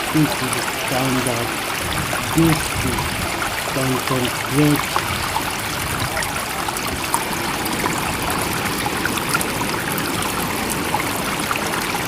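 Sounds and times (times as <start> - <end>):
trickling bubbling stream: 0.0 - 12.0.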